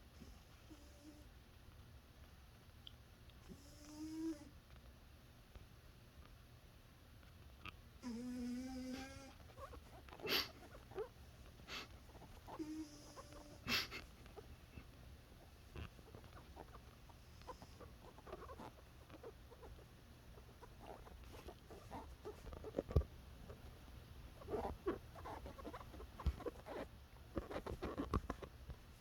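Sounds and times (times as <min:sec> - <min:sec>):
animal snoring and snuffling: 0:00.2 - 0:01.3, 0:03.4 - 0:04.6, 0:08.0 - 0:14.9, 0:15.7 - 0:23.7, 0:24.4 - 0:28.6.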